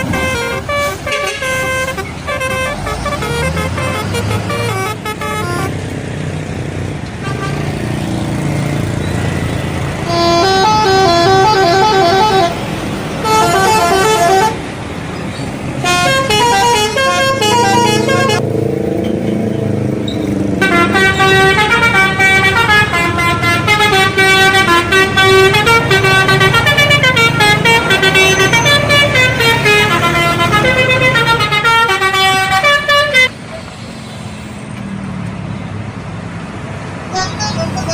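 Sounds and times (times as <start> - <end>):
bus musical horn: 0.0 - 5.8, 7.2 - 7.8, 9.9 - 14.7, 15.8 - 18.5, 20.6 - 33.4, 37.1 - 37.9
bus engine rumble: 0.0 - 37.9.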